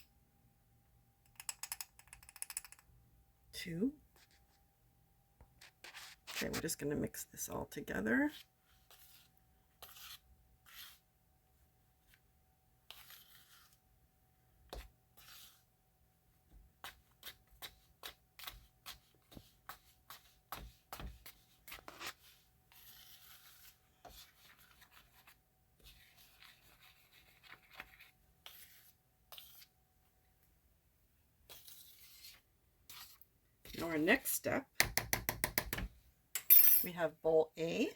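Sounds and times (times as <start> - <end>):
utensil scraping in bowl: 8.3 - 11.1, 12.9 - 13.8, 14.8 - 15.7, 16.8 - 29.8, 31.5 - 34.4
utensil tapping against bowl: 34.8 - 35.9.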